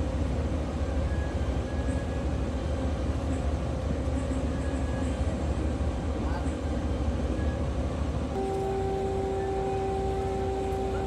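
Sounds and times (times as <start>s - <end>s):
diesel engine rumbling: 8.4s - 11.0s
steady hum: 8.4s - 11.0s.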